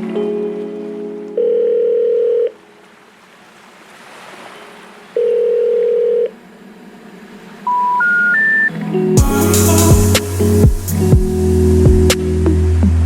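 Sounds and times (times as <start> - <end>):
telephone line tone: 1.4 - 2.6, 5.2 - 6.3, 7.7 - 8.8
rising short beeps: 7.7 - 8.7
soft line hiss: 9.2 - 12.4.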